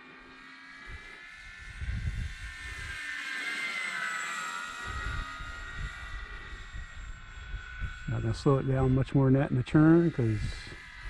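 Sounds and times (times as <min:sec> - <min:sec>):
model plane motor whining: 0:00.0 - 0:11.0
wind buffeting microphone: 0:01.6 - 0:03.0, 0:04.8 - 0:11.0.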